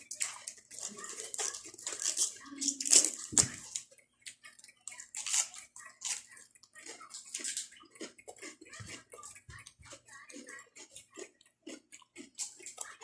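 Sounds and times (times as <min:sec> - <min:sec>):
wet chewing of raw vegetables: 0:05.2 - 0:13.0.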